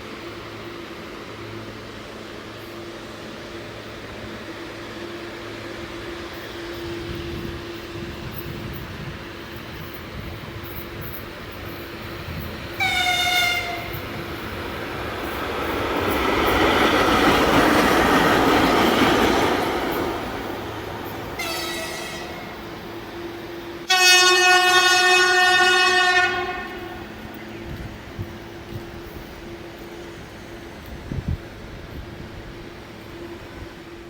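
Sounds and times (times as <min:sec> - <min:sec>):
train rushing past: 0:00.0 - 0:34.0
locomotive horn blasts: 0:12.8 - 0:14.0, 0:21.4 - 0:22.5, 0:23.9 - 0:27.2.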